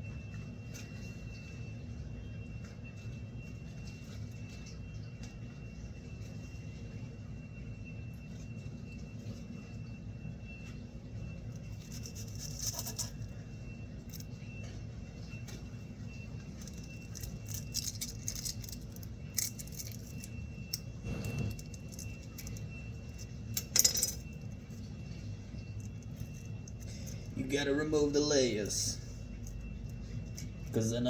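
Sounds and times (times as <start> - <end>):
low hum: 0.0 - 31.0.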